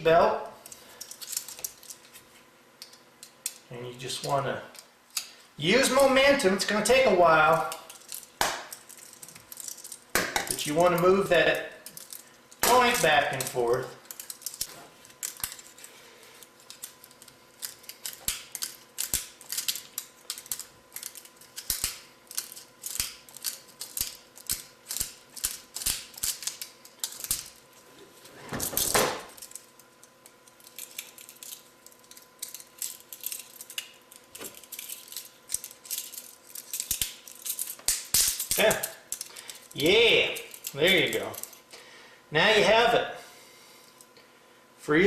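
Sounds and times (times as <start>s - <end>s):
handcuff chain clicking and rattling: 0.6s - 2.0s, 7.4s - 11.0s, 11.8s - 27.8s, 28.7s - 41.7s.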